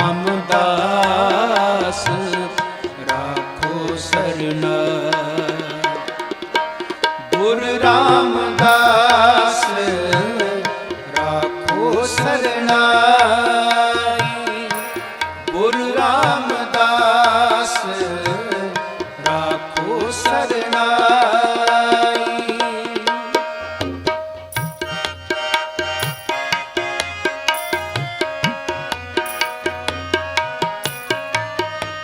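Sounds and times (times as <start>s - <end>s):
tabla rhythm: 0.0s - 32.0s
ornamented melody line: 7.8s - 9.6s, 14.7s - 15.6s, 24.0s - 31.6s.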